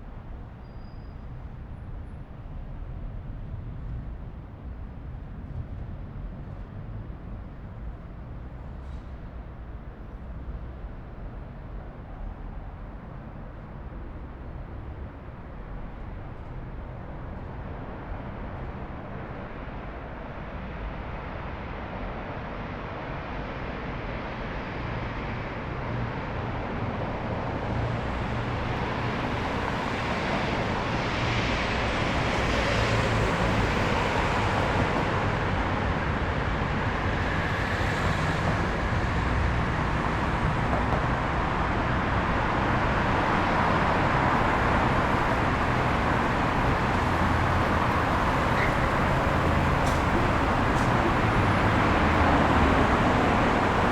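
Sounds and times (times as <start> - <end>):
passing cars rumbling: 25.8 - 53.9.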